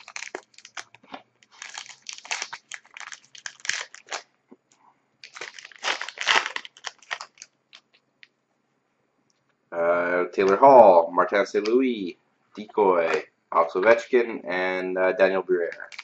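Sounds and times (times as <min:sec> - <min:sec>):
foil wrapper crinkling and tearing: 0:00.0 - 0:04.3, 0:05.2 - 0:08.0, 0:15.6 - 0:16.0.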